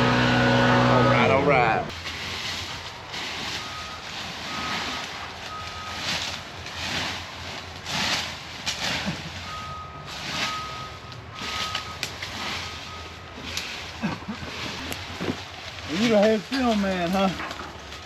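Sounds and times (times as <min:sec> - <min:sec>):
backup alarm beeping: 0:03.6 - 0:06.0, 0:09.5 - 0:12.0.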